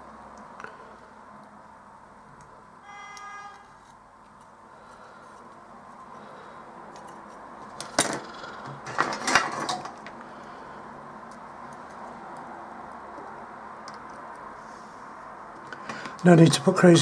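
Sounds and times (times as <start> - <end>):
small components and tools clattering: 6.9 - 10.5
steady background hiss: 10.3 - 17.0.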